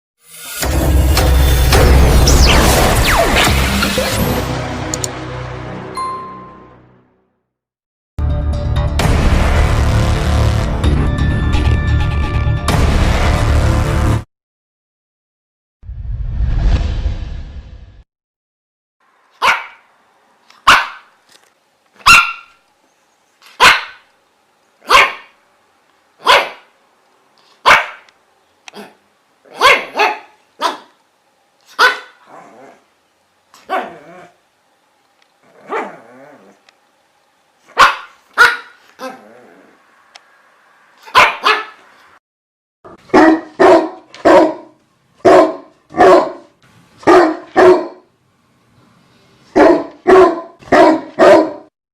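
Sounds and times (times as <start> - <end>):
dog barking: 19.4 - 19.9, 20.6 - 21.1, 22.0 - 22.6, 23.6 - 24.1, 24.8 - 25.4, 26.2 - 26.7, 27.6 - 28.1, 28.7 - 31.0, 31.7 - 32.3, 33.6 - 34.1, 35.6 - 36.0, 37.7 - 39.2, 41.0 - 41.8, 42.9 - 48.1, 49.6 - 51.7.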